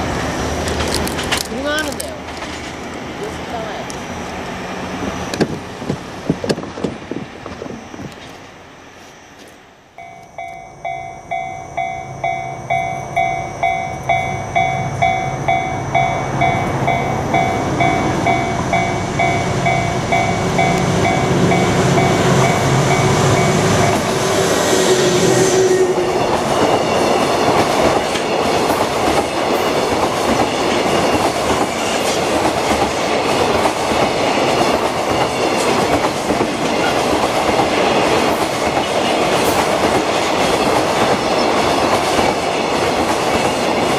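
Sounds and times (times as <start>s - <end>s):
train approaching: 0.0s - 43.9s
train wheels clattering over rail joints: 0.6s - 3.0s
level crossing warning bell: 9.9s - 24.2s.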